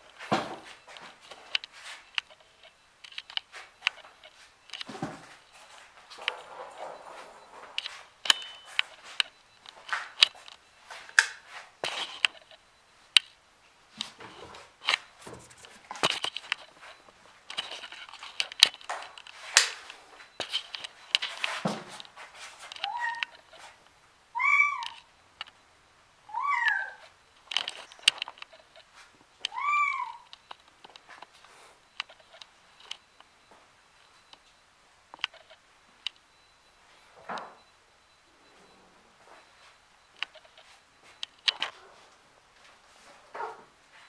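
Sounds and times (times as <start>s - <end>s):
clicks taps and scuffling: 0.1s - 12.6s, 13.9s - 23.9s
young cat meowing: 22.8s - 23.4s, 24.4s - 25.0s, 26.3s - 27.0s, 29.5s - 30.3s.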